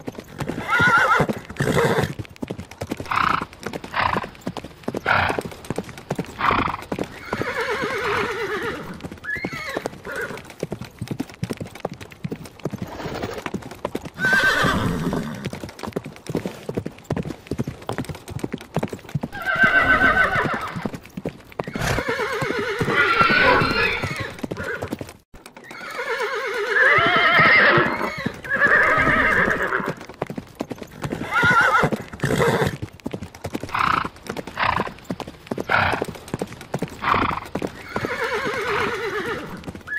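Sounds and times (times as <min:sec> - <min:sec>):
horses neighing: 0:00.0 - 0:02.3, 0:02.9 - 0:10.5, 0:12.8 - 0:15.6, 0:19.2 - 0:30.1, 0:30.9 - 0:32.9, 0:33.6 - 0:39.9
clatter of hooves: 0:00.0 - 0:39.9.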